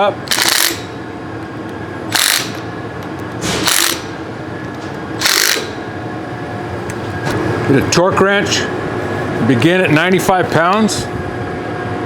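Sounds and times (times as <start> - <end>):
ratchet wrench clicking: 0.3 - 0.9, 2.1 - 2.6, 3.6 - 4.0, 5.2 - 5.7.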